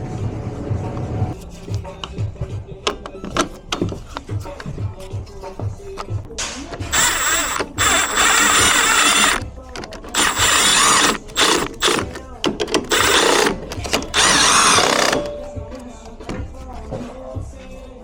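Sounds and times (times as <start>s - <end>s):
power drill whining: 6.9s - 15.4s.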